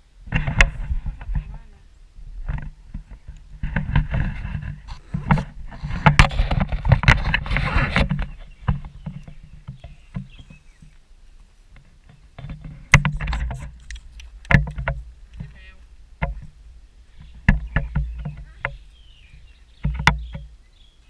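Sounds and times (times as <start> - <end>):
clattering knocks and rattles: 2.4 - 10.6, 11.8 - 15.6, 16.2 - 16.6, 17.2 - 20.5
atv engine humming: 12.8 - 21.0.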